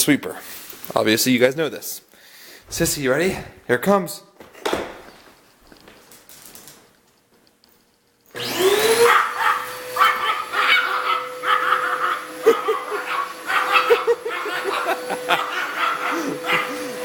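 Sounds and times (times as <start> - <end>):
vacuum cleaner motor: 8.3 - 17.0
dog barking: 8.9 - 17.0.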